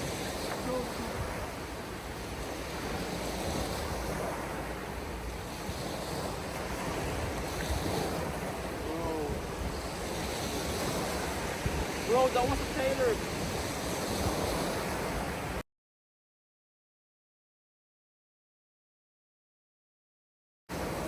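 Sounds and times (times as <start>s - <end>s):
surf breaking on beach: 0.0s - 15.6s, 20.7s - 21.0s
wind buffeting microphone: 0.0s - 15.6s.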